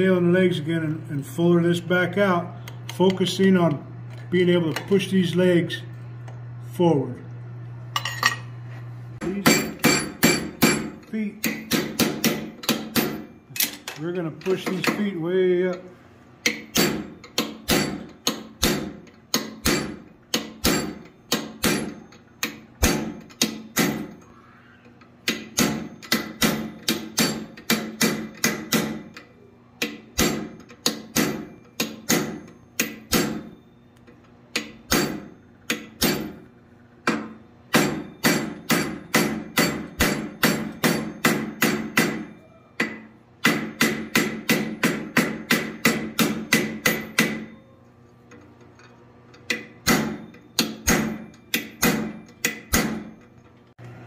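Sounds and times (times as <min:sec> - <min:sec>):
hammer striking hot steel: 0:09.3 - 0:13.7, 0:16.4 - 0:24.2, 0:25.2 - 0:29.1, 0:29.8 - 0:33.6, 0:34.5 - 0:36.4, 0:37.0 - 0:47.6, 0:49.5 - 0:53.2
anvil ringing: 0:09.3 - 0:13.9, 0:34.6 - 0:36.4, 0:37.1 - 0:47.7.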